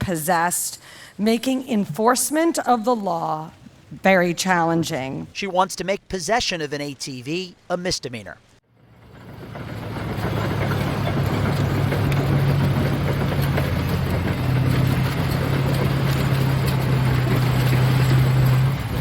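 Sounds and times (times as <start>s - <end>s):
bulldozer diesel engine running: 8.7s - 19.0s.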